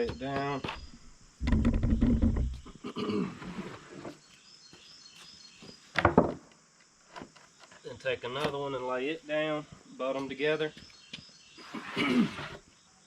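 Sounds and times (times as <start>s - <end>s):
plywood board scraping: 0.1s - 4.3s, 11.6s - 12.7s.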